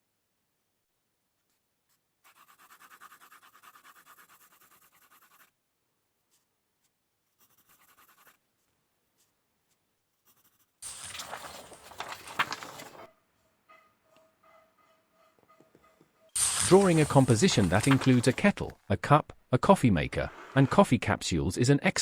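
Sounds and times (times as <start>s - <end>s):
pencil scratching on paper: 1.4s - 5.6s, 6.2s - 11.8s.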